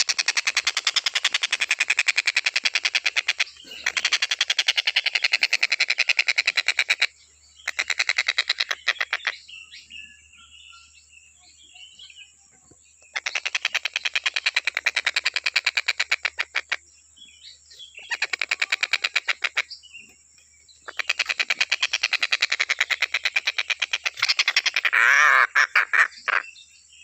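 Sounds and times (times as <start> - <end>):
bird rattling call: 0.0 - 9.4, 13.1 - 16.8, 18.0 - 19.8, 20.8 - 26.5
soft bird chirps: 2.6 - 27.0.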